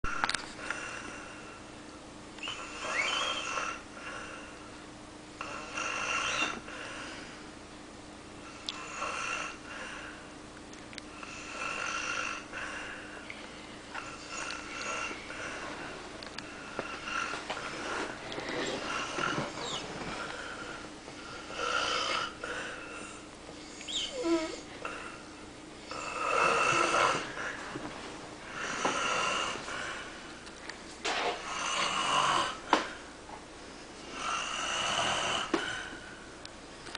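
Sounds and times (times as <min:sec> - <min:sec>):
person snoring: 0:02.4 - 0:04.6, 0:05.4 - 0:07.1, 0:08.4 - 0:10.1, 0:11.1 - 0:13.0, 0:14.0 - 0:15.9, 0:16.5 - 0:23.2, 0:23.8 - 0:25.3, 0:25.9 - 0:27.6, 0:28.5 - 0:30.1, 0:31.4 - 0:32.9, 0:34.1 - 0:36.0.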